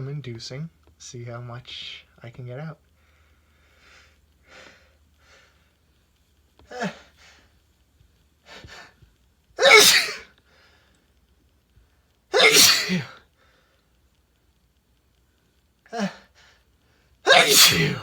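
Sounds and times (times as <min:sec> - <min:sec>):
short catching breaths: 0:02.9 - 0:05.7
man sneezing: 0:09.6 - 0:10.2, 0:12.4 - 0:13.1, 0:17.3 - 0:18.0.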